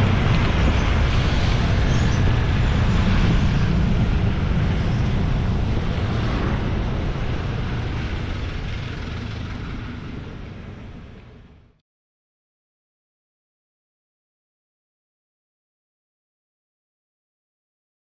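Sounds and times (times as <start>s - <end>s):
wash of noise: 0.0s - 11.6s
engine rumble: 0.0s - 11.8s.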